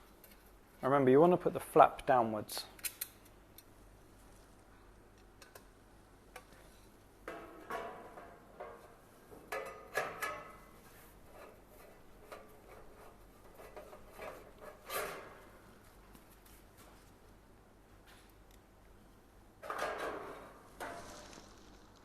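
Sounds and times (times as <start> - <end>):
screwdriver clicks and metal clinks: 2.8 - 3.3.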